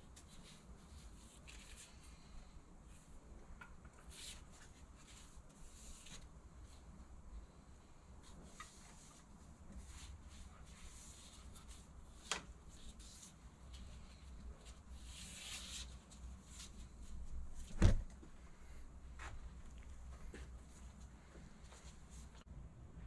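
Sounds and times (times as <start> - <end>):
faint rubbing and handling: 0.0 - 22.5
low steady hum: 0.0 - 23.0.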